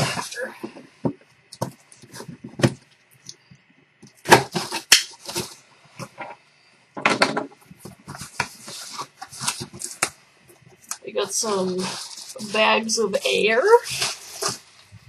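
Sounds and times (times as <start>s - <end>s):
cardboard box rustling and scraping: 7.8s - 10.1s, 11.2s - 14.9s.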